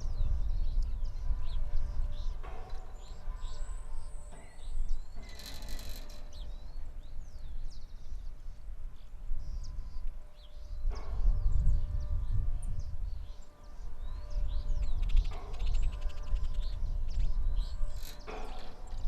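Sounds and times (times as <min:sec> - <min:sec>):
wind gusting on microphone: 0:00.0 - 0:05.2, 0:06.0 - 0:19.0
birds chirping: 0:00.0 - 0:19.0.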